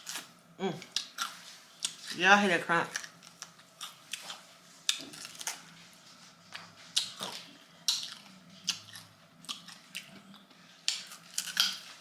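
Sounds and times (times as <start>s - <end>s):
crispy chicken crunching: 10.8s - 12.0s.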